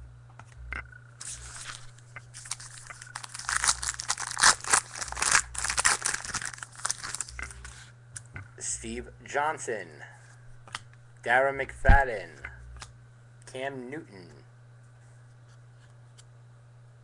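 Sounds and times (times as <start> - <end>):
foil wrapper tearing and crinkling: 1.2 - 7.8.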